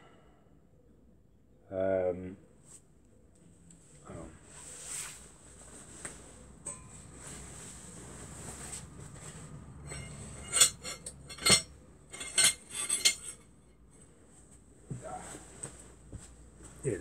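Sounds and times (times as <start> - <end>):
metal handlebars clinking: 9.8 - 13.5.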